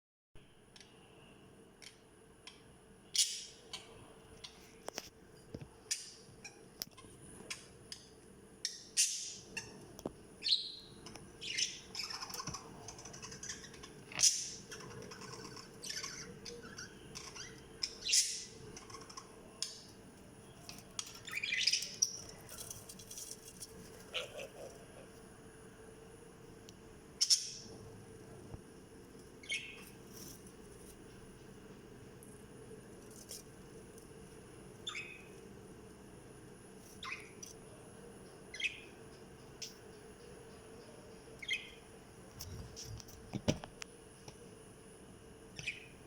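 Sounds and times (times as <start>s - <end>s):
budgerigars chirping and squawking: 11.4s - 19.8s, 21.0s - 22.2s, 24.0s - 25.0s, 27.2s - 27.7s, 29.4s - 29.8s, 34.8s - 35.3s, 37.0s - 37.4s, 38.5s - 38.9s.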